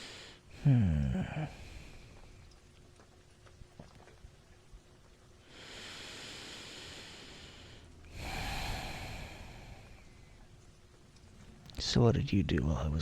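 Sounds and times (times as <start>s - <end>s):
man breathing deeply: 0.0s - 2.2s, 5.5s - 10.5s.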